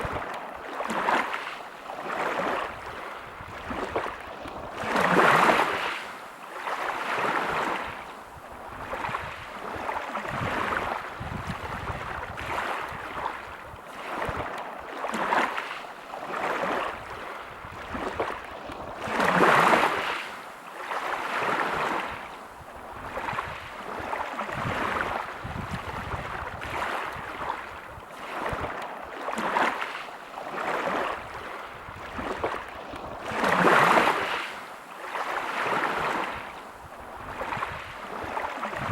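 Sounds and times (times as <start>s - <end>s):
waves breaking on pebble beach: 0.0s - 8.1s, 8.8s - 22.3s, 23.0s - 38.9s.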